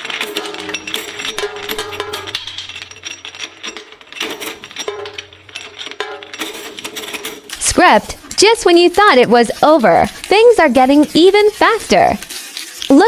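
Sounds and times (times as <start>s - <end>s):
music: 0.0s - 2.5s
sharp cracks and clinks: 0.0s - 7.7s.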